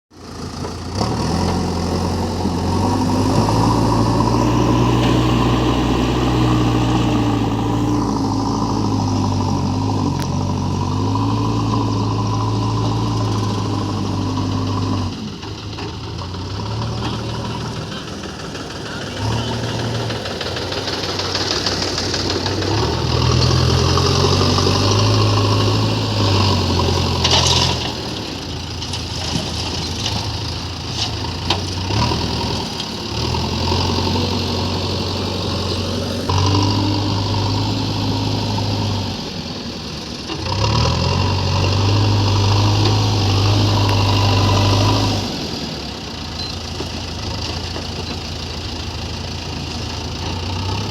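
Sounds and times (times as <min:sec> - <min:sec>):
heavy machinery diesel engine: 0:00.1 - 0:50.9.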